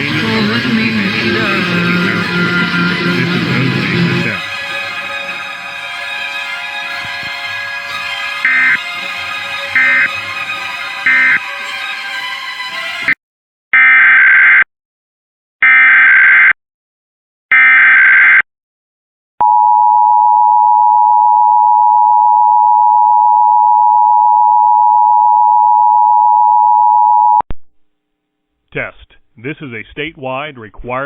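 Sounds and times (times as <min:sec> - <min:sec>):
broadcast audio: 0:00.0 - 0:13.2, 0:28.7 - 0:31.0
two-tone alert hum: 0:08.4 - 0:08.8, 0:09.8 - 0:10.1, 0:11.1 - 0:11.4.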